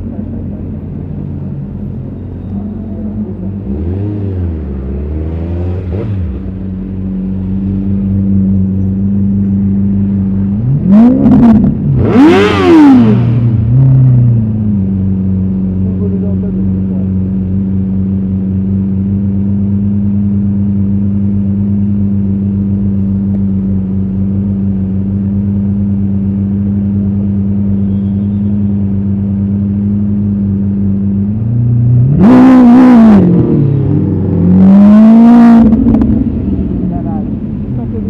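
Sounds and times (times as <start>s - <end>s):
engine revving hard: 10.7s - 14.0s, 32.0s - 36.2s
engine idling: 13.6s - 31.7s.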